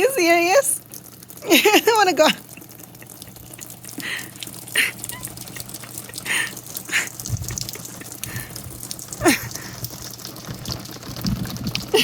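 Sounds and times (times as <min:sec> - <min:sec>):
rain dripping and pattering: 0:00.0 - 0:12.0.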